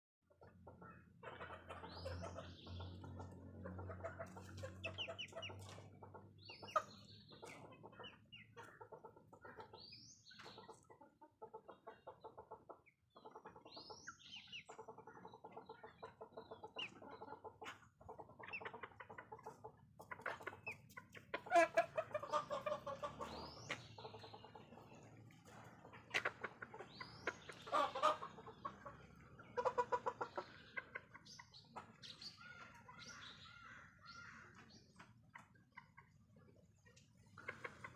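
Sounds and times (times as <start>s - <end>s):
chickens clucking: 0.3s - 37.9s.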